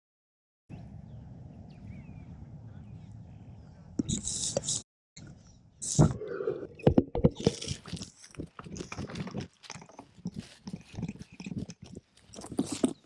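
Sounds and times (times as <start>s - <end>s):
lion teeth crunching on camera: 7.2s - 13.0s.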